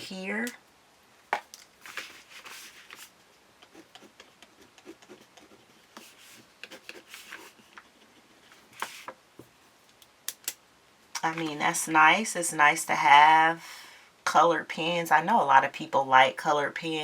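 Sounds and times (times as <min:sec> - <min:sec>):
pen scratching on paper: 0:03.6 - 0:07.6.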